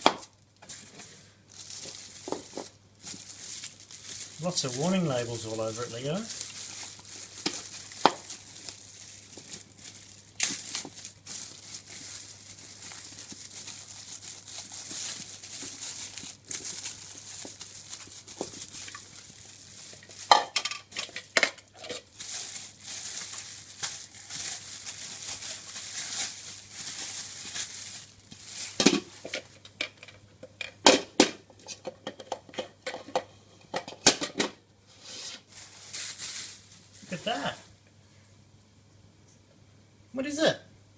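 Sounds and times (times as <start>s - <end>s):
packaging crinkling and rustling: 0.0s - 34.6s, 35.2s - 37.8s.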